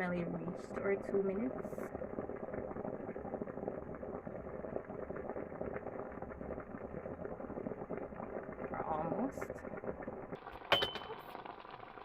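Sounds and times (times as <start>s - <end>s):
water boiling and bubbling: 0.0s - 12.0s.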